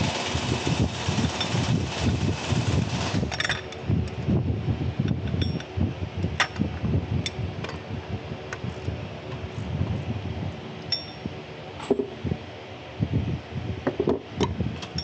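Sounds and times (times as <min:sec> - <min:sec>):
metallic tool clicks and clinks: 0:10.9 - 0:11.2.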